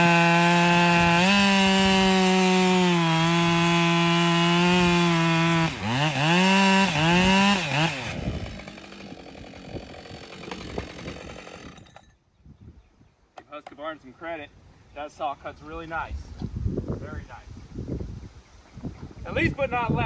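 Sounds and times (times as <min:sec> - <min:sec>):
chainsaw revving: 0:00.0 - 0:12.0
chainsaw cutting wood: 0:00.0 - 0:12.2.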